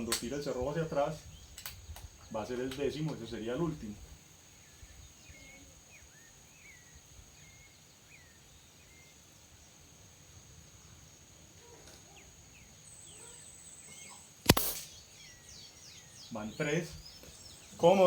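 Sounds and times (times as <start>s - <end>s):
bird chirping: 12.2s - 18.0s.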